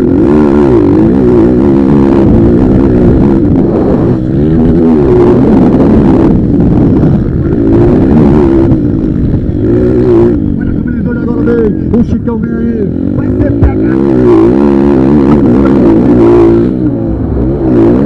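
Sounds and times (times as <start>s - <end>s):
motocross bike engines revving: 0.0s - 18.0s.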